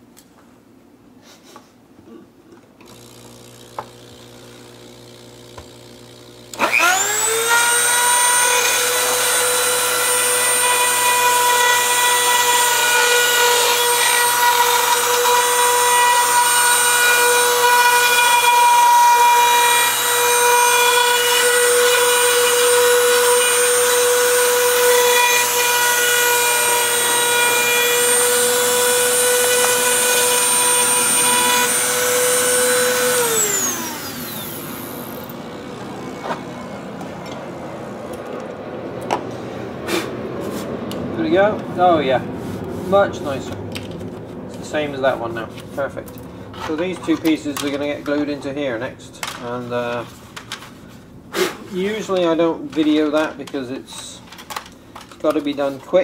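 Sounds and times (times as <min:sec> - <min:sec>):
rotary cutting tool whining: 0:02.8 - 0:37.6.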